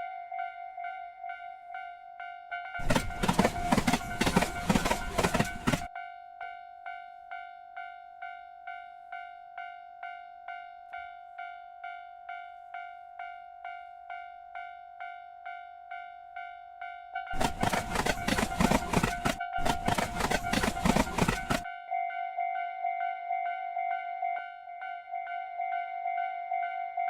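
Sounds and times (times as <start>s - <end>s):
railroad crossing bell ringing: 0.0s - 27.0s
train passing: 2.8s - 5.9s, 17.3s - 21.7s.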